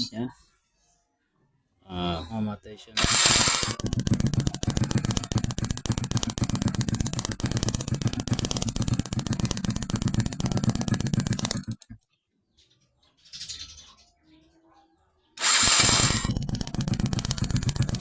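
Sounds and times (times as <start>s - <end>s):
small motorcycle engine running: 3.0s - 12.0s, 15.4s - 18.0s.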